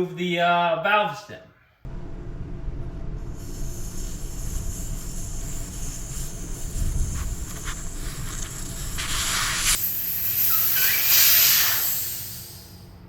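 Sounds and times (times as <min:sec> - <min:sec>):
low rumble: 0:01.9 - 0:10.8
air hissing from tire: 0:03.3 - 0:12.9
short spurts of hiss: 0:03.4 - 0:12.9.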